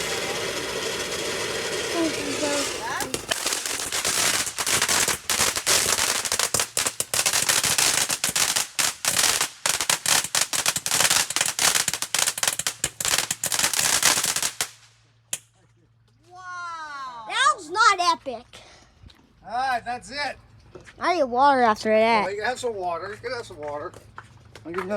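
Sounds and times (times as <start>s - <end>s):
firecrackers popping: 0.0s - 15.5s.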